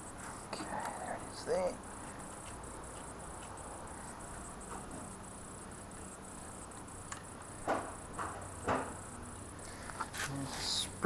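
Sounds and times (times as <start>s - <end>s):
insects chirping: 0.0s - 11.0s
light knocks: 7.2s - 9.0s.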